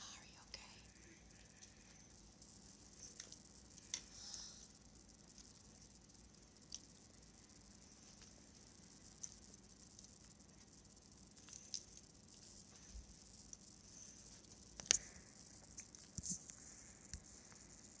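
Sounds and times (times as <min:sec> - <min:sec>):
faint hiss: 0:00.0 - 0:18.0
small clicks and taps: 0:14.3 - 0:17.6.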